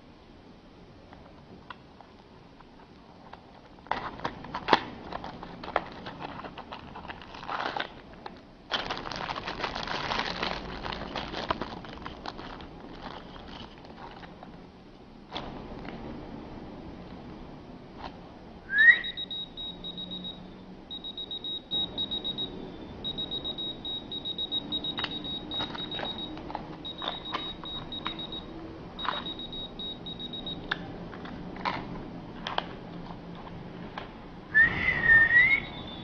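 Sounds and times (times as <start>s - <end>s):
short rising whistle: 18.7s - 19.2s, 34.5s - 36.0s
key finder high-pitched beeping: 18.8s - 30.7s.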